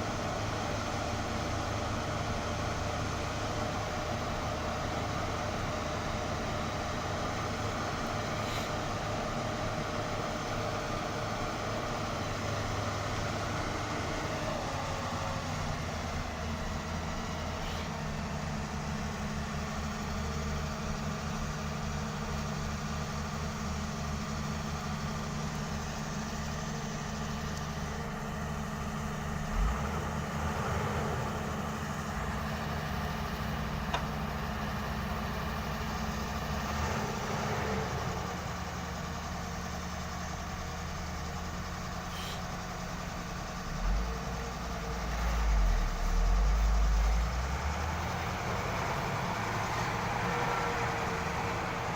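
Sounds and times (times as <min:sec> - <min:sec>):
excavator diesel engine running: 0:00.0 - 0:51.9.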